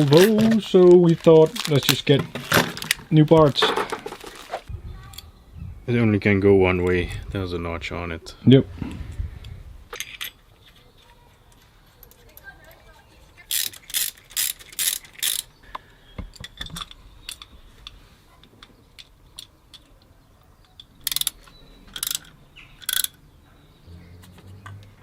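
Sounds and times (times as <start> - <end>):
ratchet wrench clicking: 13.5 - 15.5, 21.0 - 23.2.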